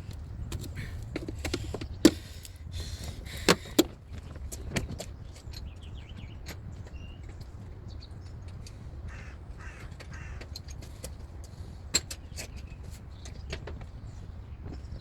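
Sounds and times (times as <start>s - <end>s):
short raspy calls: 9.1s - 10.4s.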